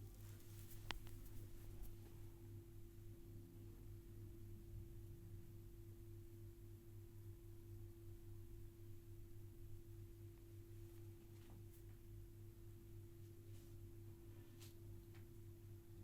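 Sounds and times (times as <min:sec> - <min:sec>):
faint clicks or scratches: 0:00.0 - 0:02.2
steady low hum: 0:00.0 - 0:07.3.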